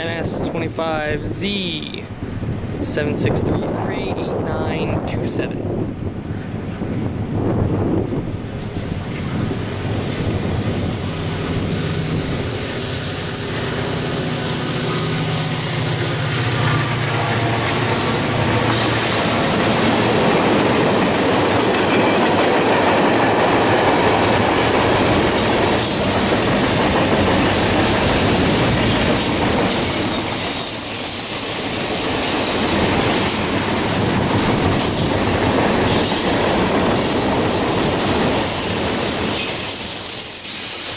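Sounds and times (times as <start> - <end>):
low diesel locomotive hum: 2.0 - 40.9
steel wheels rushing on rail: 5.6 - 40.9
high wheel squeal: 8.4 - 20.2, 27.6 - 35.2, 35.9 - 40.9
clickety-clack over rail joints: 15.9 - 30.7, 31.7 - 39.7.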